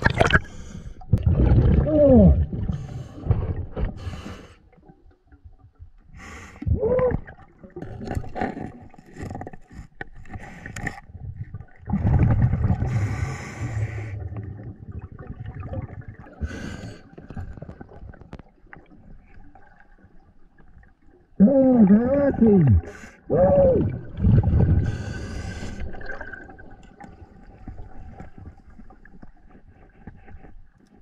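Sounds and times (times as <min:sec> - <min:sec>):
diver breathing underwater: 0:12.7 - 0:14.6, 0:24.4 - 0:26.1.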